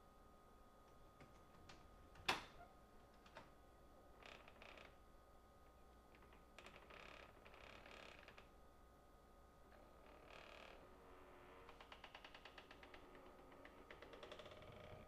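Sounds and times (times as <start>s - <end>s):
door hinge creak: 4.2s - 5.0s, 6.2s - 8.5s, 9.8s - 15.0s.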